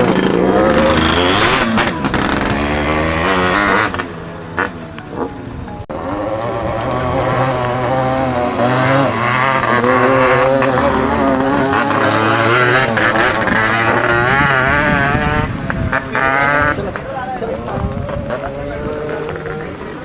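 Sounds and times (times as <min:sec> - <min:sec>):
motorcycle engine revving: 0:00.0 - 0:05.3, 0:05.9 - 0:20.0.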